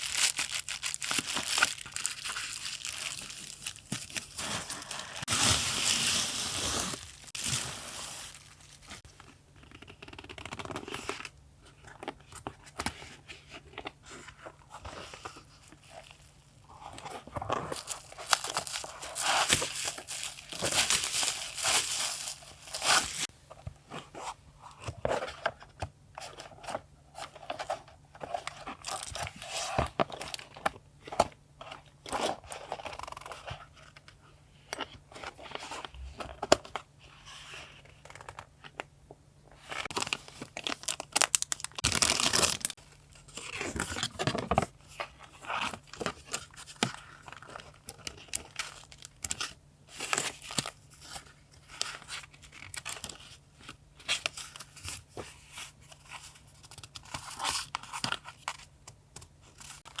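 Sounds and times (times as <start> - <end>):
paper tearing and crinkling: 0.0 - 9.0, 17.7 - 23.3, 39.9 - 42.8.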